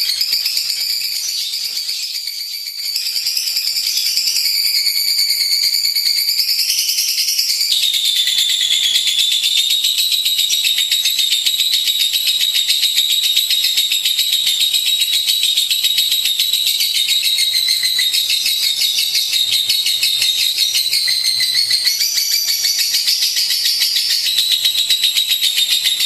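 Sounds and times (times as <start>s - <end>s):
bird trilling: 7.4s - 26.0s.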